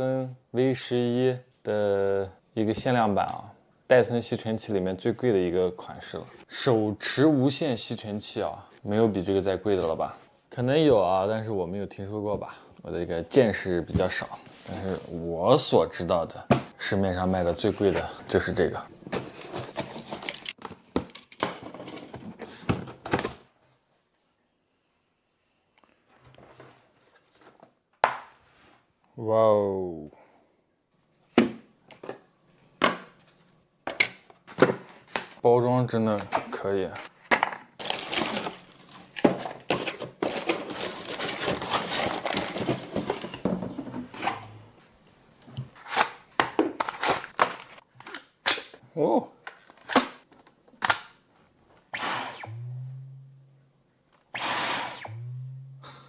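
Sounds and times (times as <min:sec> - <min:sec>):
cardboard rustling and scraping: 0:18.9 - 0:20.6, 0:37.0 - 0:44.4.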